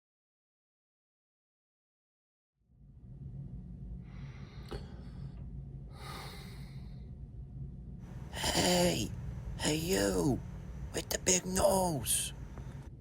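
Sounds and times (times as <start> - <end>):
low room hum: 2.7 - 13.0
person speaking: 8.2 - 12.8.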